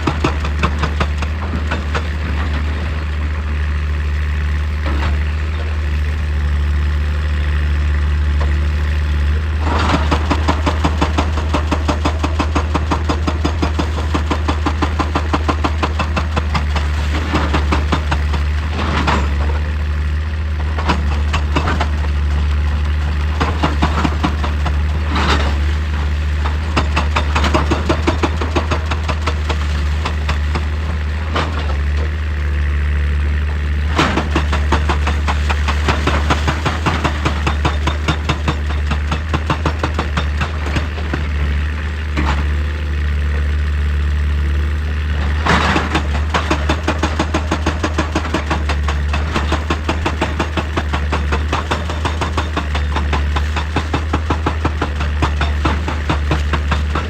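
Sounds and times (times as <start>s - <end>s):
diesel engine knocking: 0.0s - 57.0s.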